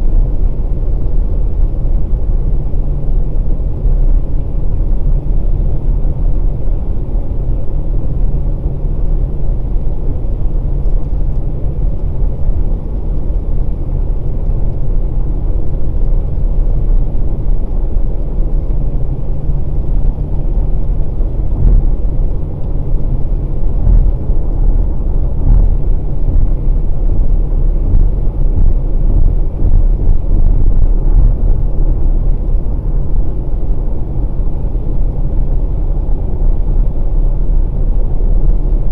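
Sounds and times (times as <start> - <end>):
diesel engine: 0.0 - 38.9
tyre noise on wet road: 19.8 - 32.4.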